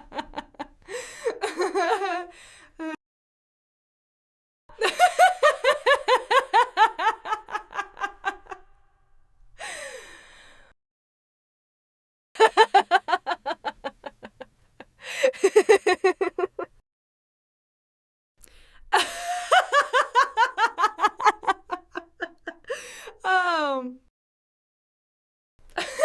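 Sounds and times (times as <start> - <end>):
breathy in-breath: 0.8 - 1.4, 2.3 - 2.8, 9.6 - 10.8, 15.0 - 15.4, 18.4 - 18.9, 22.7 - 23.2
woman laughing: 1.3 - 3.0, 4.8 - 8.7, 12.4 - 16.8, 19.0 - 23.6, 25.8 - 26.0.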